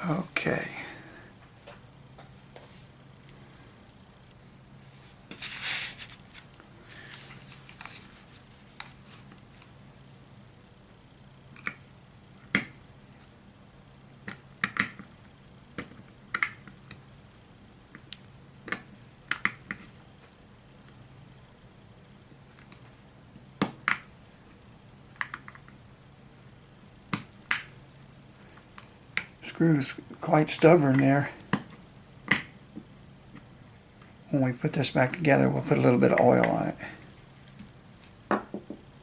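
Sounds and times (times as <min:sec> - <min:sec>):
rustle of handling: 0:04.8 - 0:10.9.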